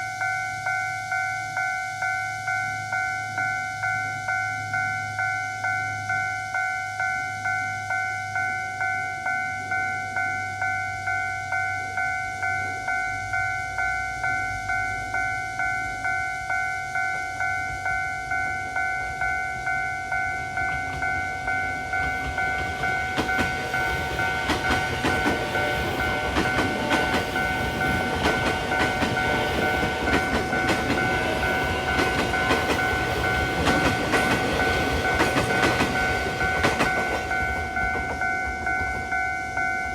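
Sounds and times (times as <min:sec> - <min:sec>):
level-crossing warning bell ringing: 0:00.0 - 0:39.9
train rumble: 0:17.7 - 0:39.9
train wheels clattering on rails: 0:20.2 - 0:39.8.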